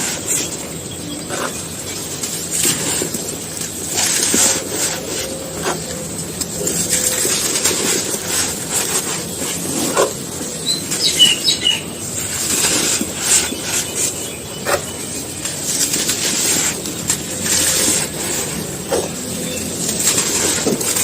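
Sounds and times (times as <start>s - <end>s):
sandy material crunching: 0.0s - 21.0s
high chirps: 10.6s - 12.1s.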